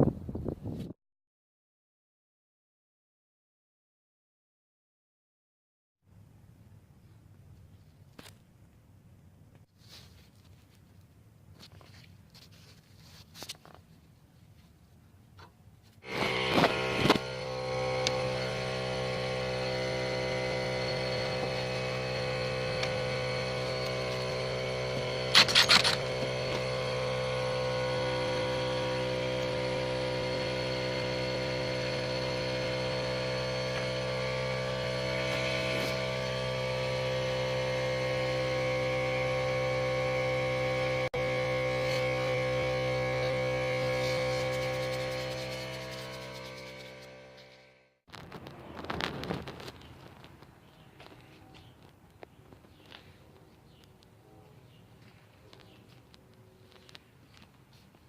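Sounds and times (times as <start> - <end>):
steady mechanical hum: 15.4 - 58.0.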